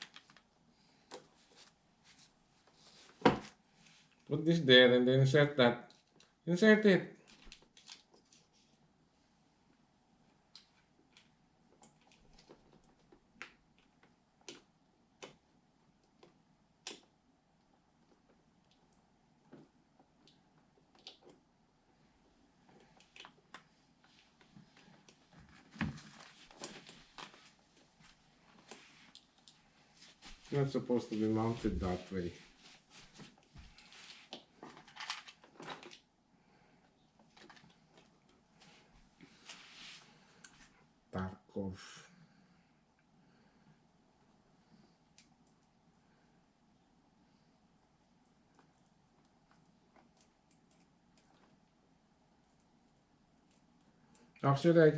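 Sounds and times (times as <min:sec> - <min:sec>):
clicks and rustling of computer parts: 0:33.8 - 0:36.1.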